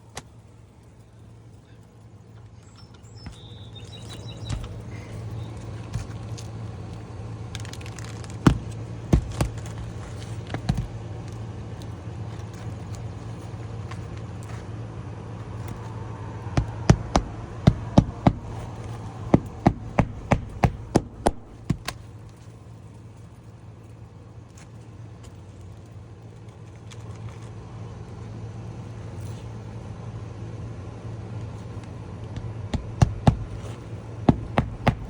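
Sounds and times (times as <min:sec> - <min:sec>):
steady low hum: 0:00.0 - 0:35.0
hammer striking nails: 0:08.5 - 0:09.8, 0:16.6 - 0:22.0, 0:32.4 - 0:35.0.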